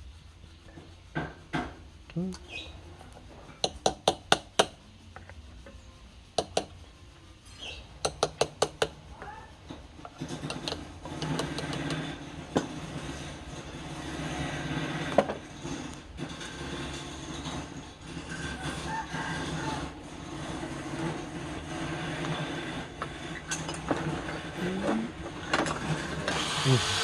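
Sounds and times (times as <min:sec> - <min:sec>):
wood lathe motor running: 0:19.4 - 0:27.0.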